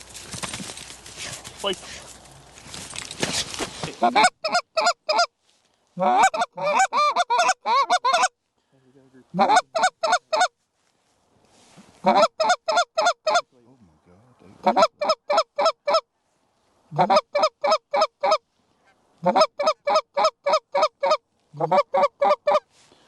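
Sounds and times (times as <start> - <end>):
goose call honks and clucks: 3.8 - 5.3, 6.0 - 8.4, 9.3 - 10.6, 12.0 - 13.5, 14.6 - 16.1, 16.9 - 22.8.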